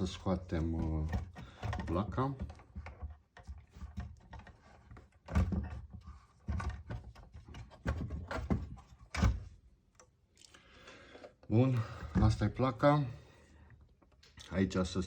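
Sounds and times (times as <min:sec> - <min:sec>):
dull knocks and clatter of handling: 0:00.0 - 0:10.2, 0:11.2 - 0:12.9.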